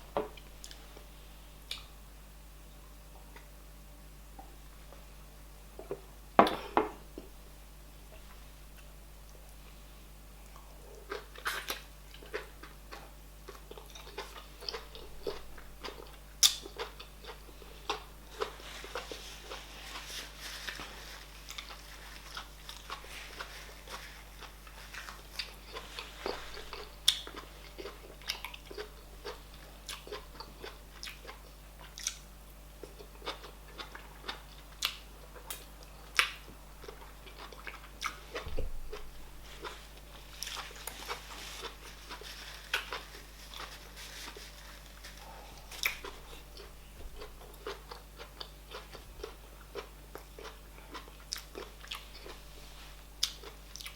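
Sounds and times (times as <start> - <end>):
close-miked chewing: 10.4 - 52.5, 53.1 - 53.9.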